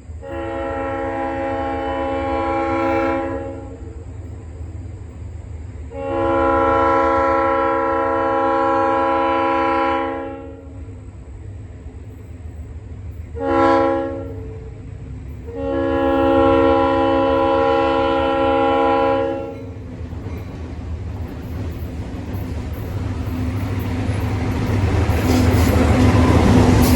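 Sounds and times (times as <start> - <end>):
locomotive air horn blasts: 0.2 - 4.0, 5.9 - 10.8, 13.4 - 14.7, 15.4 - 19.8.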